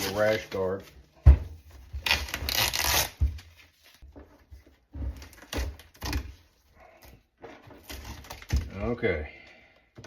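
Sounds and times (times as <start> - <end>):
adhesive cover tearing: 2.0 - 3.2.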